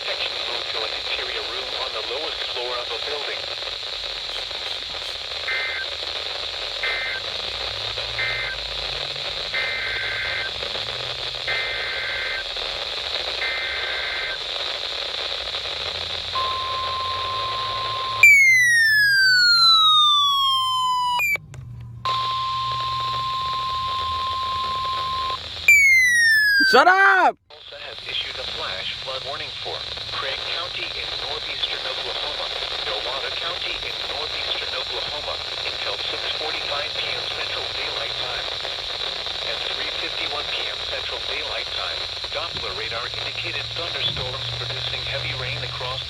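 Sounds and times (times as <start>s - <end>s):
radio hiss: 0.0s - 18.9s, 26.6s - 46.0s
steady warning alarm tone: 16.4s - 21.4s, 22.1s - 26.8s.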